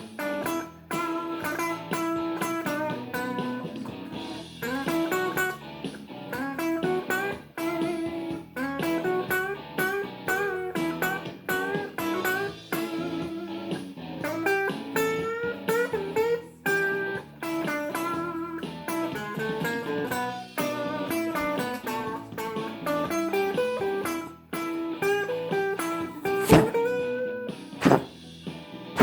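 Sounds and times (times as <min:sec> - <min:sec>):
blues guitar picked notes: 0:00.2 - 0:25.6
sharp knock: 0:26.4 - 0:26.8, 0:27.8 - 0:28.1.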